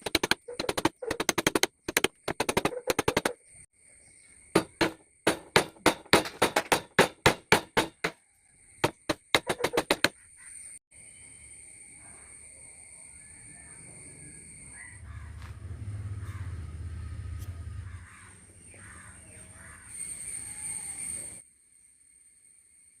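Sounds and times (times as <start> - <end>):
mallet tapping chisel into wood: 8.8 - 10.1.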